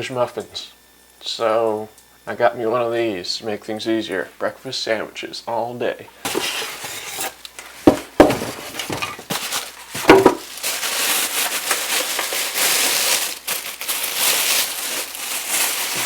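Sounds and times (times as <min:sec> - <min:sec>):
packaging rustling and crinkling: 0:06.3 - 0:16.0.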